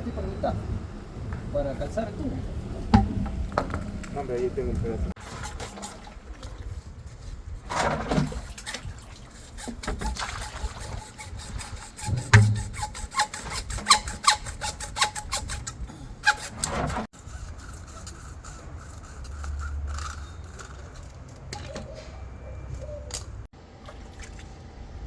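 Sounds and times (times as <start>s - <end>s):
scraping strokes on a pipe: 5.2s - 21.3s
dull knock: 12.3s - 12.7s.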